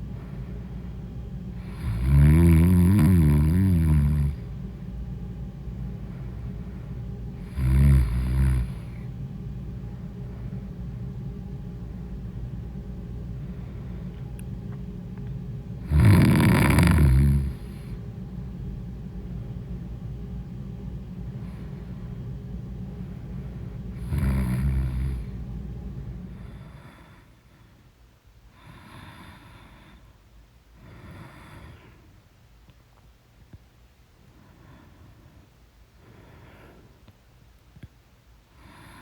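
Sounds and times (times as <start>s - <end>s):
low hum: 0.0s - 28.3s
woman snoring: 1.6s - 4.5s, 7.4s - 9.1s, 15.8s - 18.0s, 24.0s - 25.4s, 28.6s - 29.9s.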